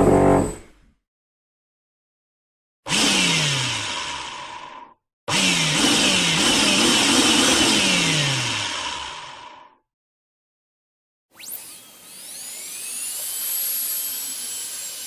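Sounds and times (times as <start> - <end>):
power drill running: 2.9 - 9.4, 11.4 - 15.0.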